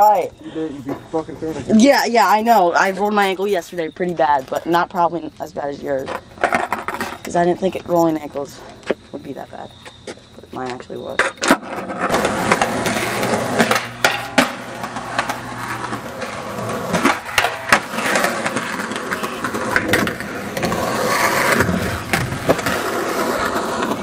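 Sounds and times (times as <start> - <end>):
skateboard wheels rolling on pavement: 0.0 - 24.0
skateboard clacks and knocks: 11.1 - 24.0.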